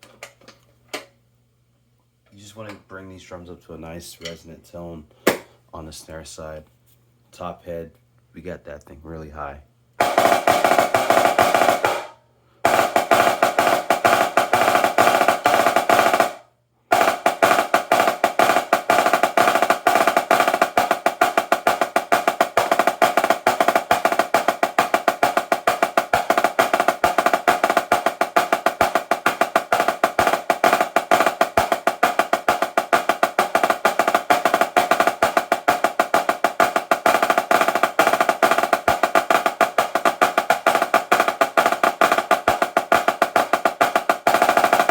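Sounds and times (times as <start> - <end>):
high-pitched snare drum roll: 10.0 - 44.9.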